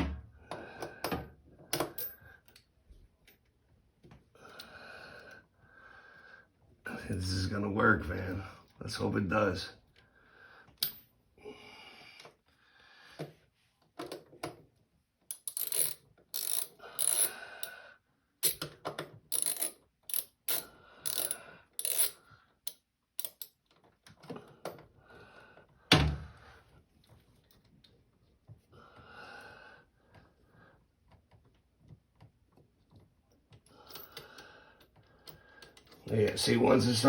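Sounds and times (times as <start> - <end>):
ratcheting hand tool clicking: 15.3 - 17.7, 18.4 - 23.8.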